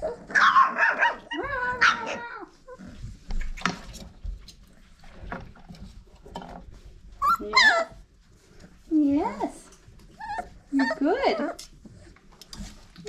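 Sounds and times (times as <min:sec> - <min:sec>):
puppy whining: 0:00.0 - 0:03.6, 0:07.2 - 0:08.1, 0:09.9 - 0:13.0.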